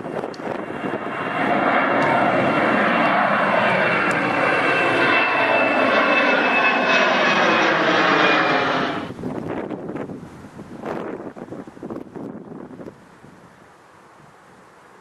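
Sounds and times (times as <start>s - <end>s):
high thin engine whine: 0.0s - 10.0s
jet engines roaring past: 0.0s - 15.0s.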